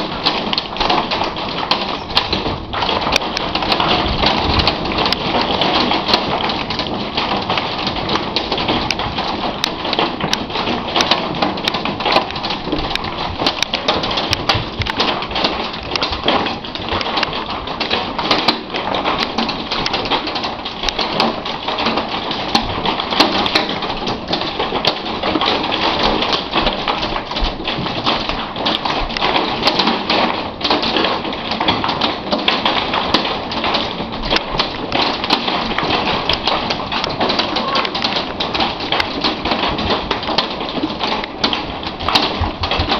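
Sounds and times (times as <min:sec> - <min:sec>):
hailstones pelting hard surfaces: 0:00.0 - 0:42.9.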